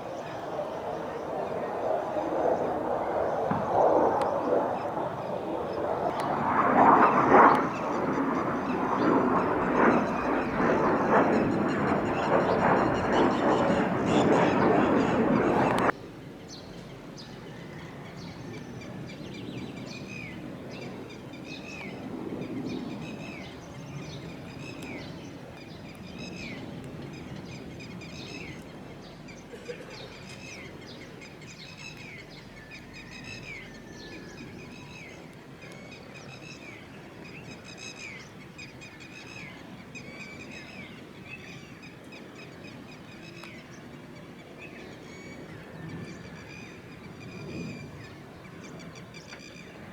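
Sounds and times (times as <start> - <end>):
bird calling: 0.0 - 15.9
low outdoor rumble: 0.0 - 16.0.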